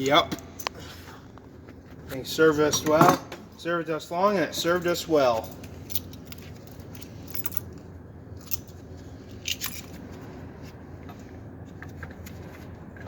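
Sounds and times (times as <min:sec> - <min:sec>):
steady low hum: 0:00.0 - 0:13.0
metallic clicks and clinks: 0:04.7 - 0:07.8.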